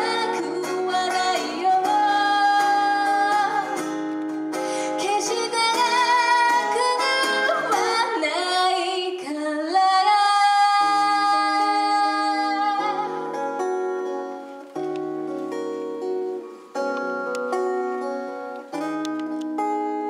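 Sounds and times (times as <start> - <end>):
person singing: 0.0 - 14.1
guitar chords: 0.0 - 20.0.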